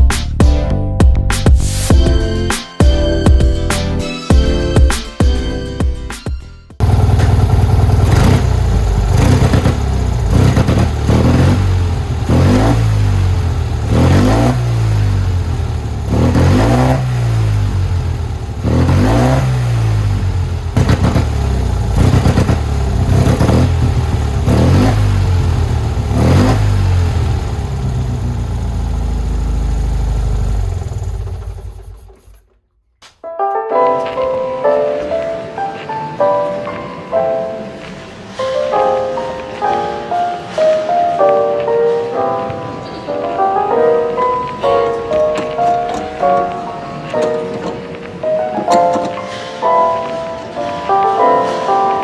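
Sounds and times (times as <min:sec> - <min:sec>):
small car engine revving: 0:06.8 - 0:32.4.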